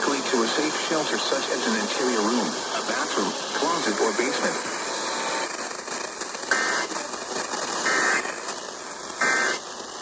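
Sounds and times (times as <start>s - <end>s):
radio hiss: 0.0s - 10.0s
warbling digital data tones: 7.8s - 8.5s, 9.2s - 9.6s.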